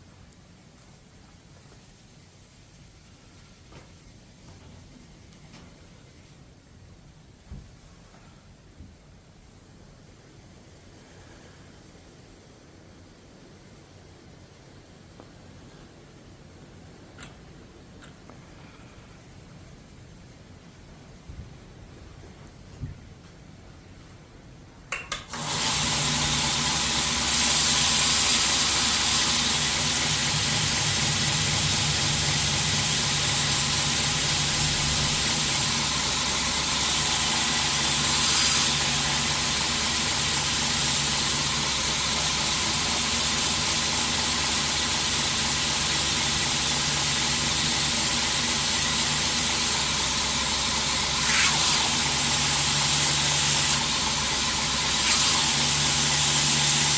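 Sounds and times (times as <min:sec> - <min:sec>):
belt grinder running: 0:25.3 - 0:56.9.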